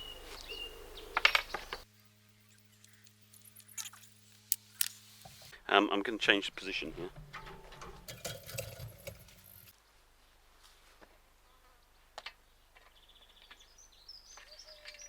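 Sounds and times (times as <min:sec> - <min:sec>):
faint birds chirping: 0:00.0 - 0:05.5.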